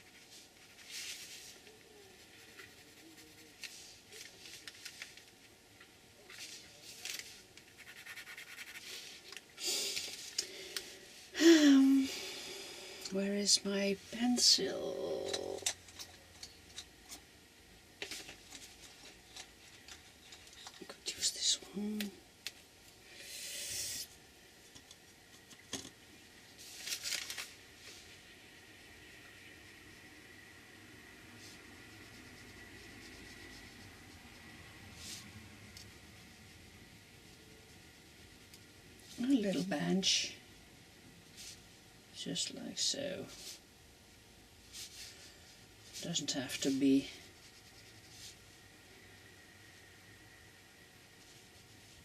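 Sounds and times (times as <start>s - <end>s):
paper rustle: 0.2s - 5.4s, 6.2s - 9.4s, 26.6s - 28.0s
drawing tool scratching paper: 7.7s - 9.0s.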